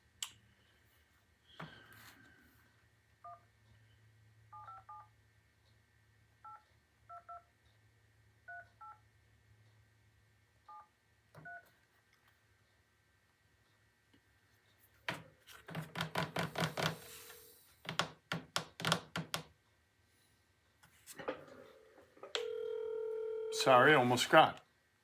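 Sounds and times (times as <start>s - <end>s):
phone keypad dial tones: 22.2s - 23.6s.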